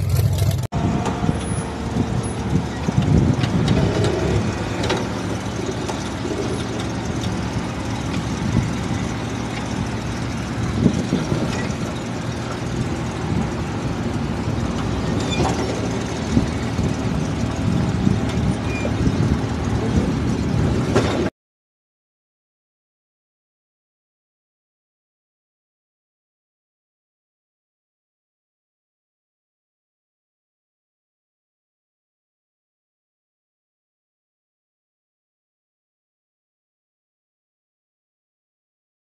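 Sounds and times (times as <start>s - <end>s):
vehicle engine under load: 0.0s - 21.3s
knocks and rattles: 20.8s - 21.3s.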